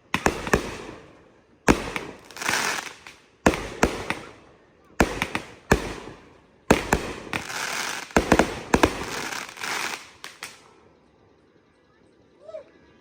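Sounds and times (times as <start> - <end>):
fireworks bangs: 0.0 - 10.6
fireworks crackling hiss: 1.7 - 4.4, 5.0 - 10.7.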